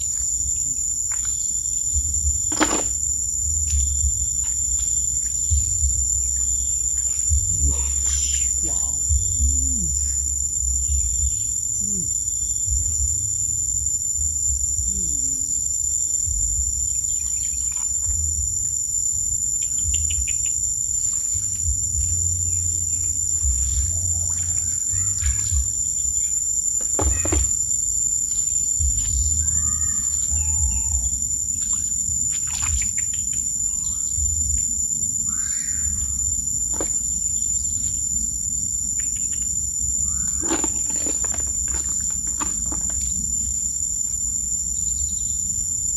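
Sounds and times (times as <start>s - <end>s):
insects droning: 0.0s - 45.9s
wind rumble on microphone: 0.0s - 45.9s
bird chirps: 19.6s - 34.3s.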